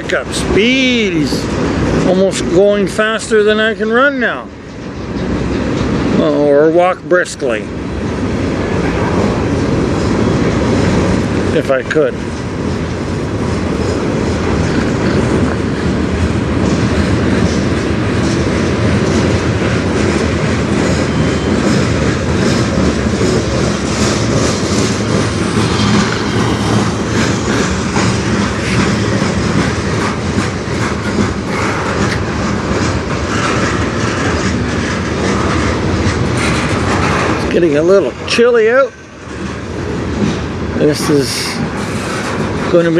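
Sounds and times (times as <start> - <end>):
freight train rumbling past: 0.0 - 42.9
wheels clicking over rail joints: 8.9 - 42.9.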